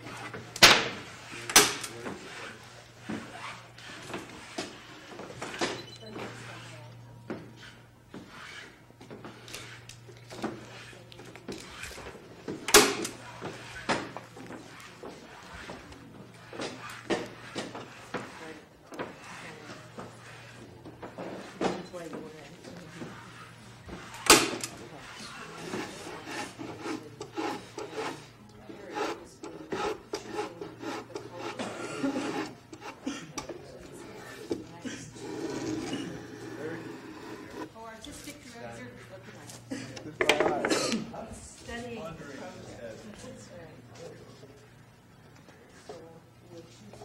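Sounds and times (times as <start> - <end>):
hand plane shaving wood: 25.0 - 33.0.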